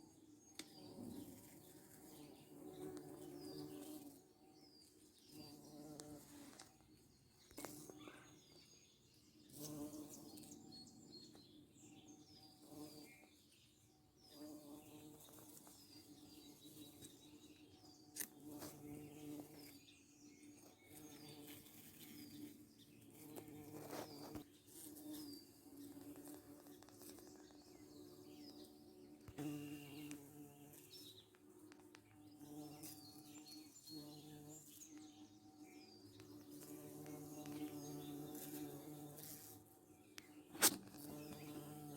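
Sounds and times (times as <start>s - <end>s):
birds chirping: 0.0s - 41.9s
insect buzzing: 5.3s - 6.7s, 9.5s - 10.7s, 20.5s - 41.9s.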